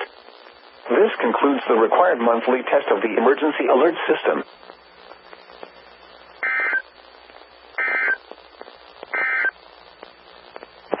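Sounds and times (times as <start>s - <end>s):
faint radio hiss: 0.0s - 11.0s
digital data tone bursts: 6.4s - 6.8s, 7.8s - 8.2s, 9.1s - 9.6s.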